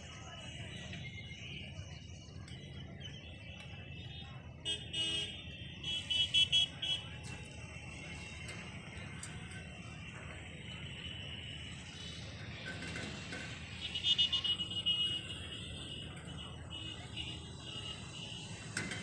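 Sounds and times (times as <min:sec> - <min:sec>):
low traffic rumble: 0:00.0 - 0:19.0
vehicle horn honking: 0:04.6 - 0:07.2, 0:13.8 - 0:18.6
short horn beeps: 0:04.7 - 0:07.1, 0:13.8 - 0:18.1.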